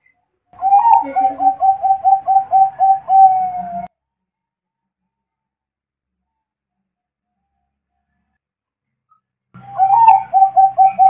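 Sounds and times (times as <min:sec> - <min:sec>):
faint dove cooing: 0:00.6 - 0:03.9, 0:09.6 - 0:11.0.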